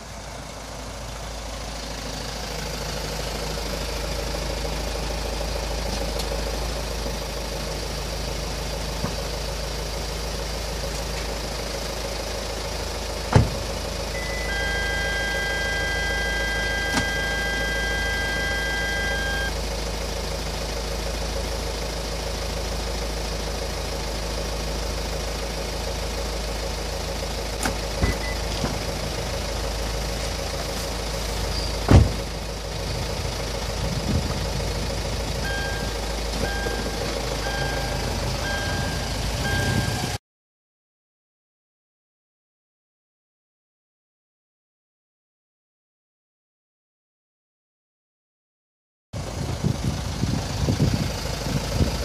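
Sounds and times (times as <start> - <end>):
car engine idling: 0.0 - 40.2, 49.2 - 52.0
thump: 13.3 - 13.6, 31.9 - 32.3
continuous electronic beep: 14.1 - 19.6, 28.0 - 28.5, 35.4 - 40.2
intermittent beep: 14.2 - 19.6, 28.0 - 28.5, 35.4 - 40.1.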